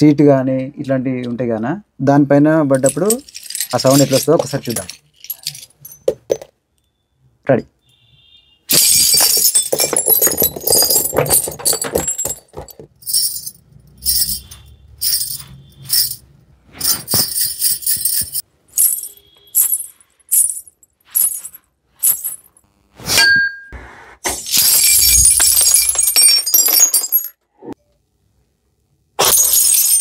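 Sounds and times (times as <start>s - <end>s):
glass pieces jingling: 2.8s - 6.5s, 8.7s - 16.2s, 16.8s - 22.5s, 24.5s - 27.4s, 29.2s - 30.0s
broken glass shards clattering: 2.9s - 6.4s, 8.7s - 16.2s, 24.3s - 27.4s, 29.2s - 30.0s.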